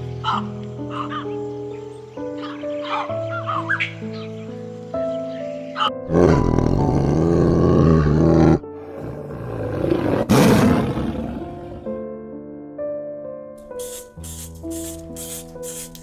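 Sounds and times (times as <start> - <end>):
background music: 0.0 - 16.0
big cat roaring: 6.1 - 12.0.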